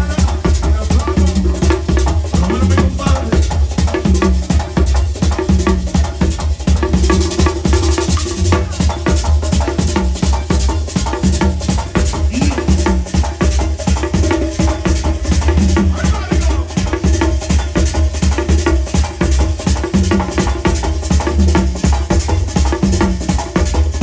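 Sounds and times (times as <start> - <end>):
live band merengue music: 0.0 - 24.0
person singing: 12.2 - 12.9, 15.9 - 16.9.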